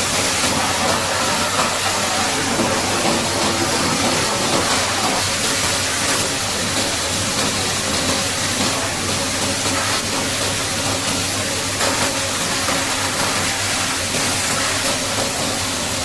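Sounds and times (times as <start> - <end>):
water jet spraying: 0.0 - 16.0.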